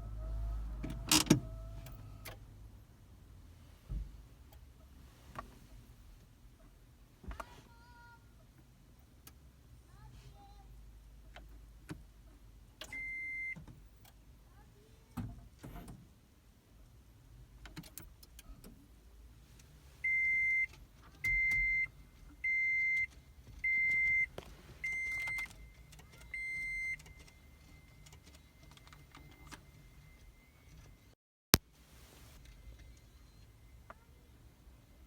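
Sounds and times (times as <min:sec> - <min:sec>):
faint steady tone: 0:19.9 - 0:35.0.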